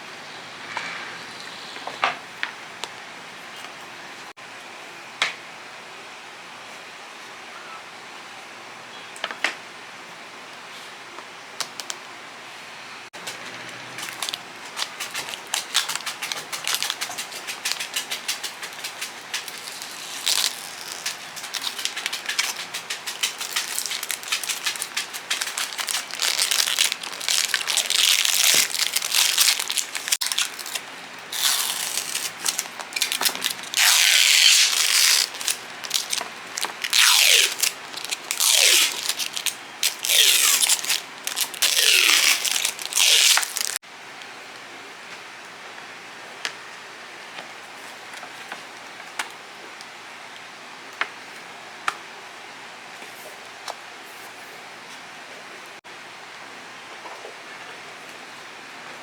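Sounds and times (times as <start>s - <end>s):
plastic packaging crinkling and tearing: 13.2s - 43.8s.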